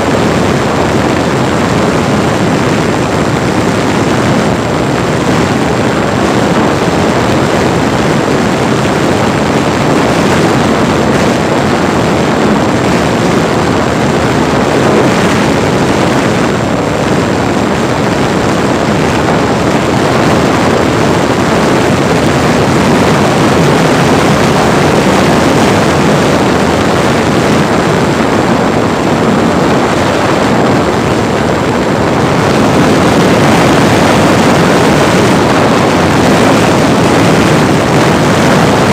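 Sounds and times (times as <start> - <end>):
rush of air: 0.0 - 38.9.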